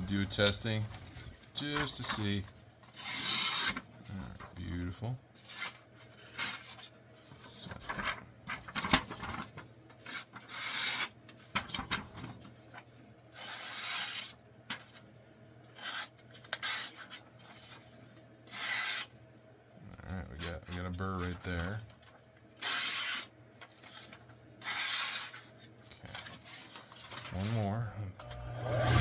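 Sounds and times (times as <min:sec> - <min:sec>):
knife slicing through paper: 0:13.3 - 0:14.4, 0:15.8 - 0:17.8, 0:18.5 - 0:19.1, 0:22.6 - 0:25.5.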